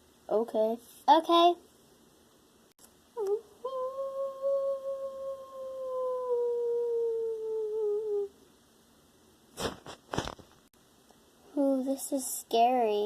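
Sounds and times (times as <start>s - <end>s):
long howl: 3.2s - 8.3s.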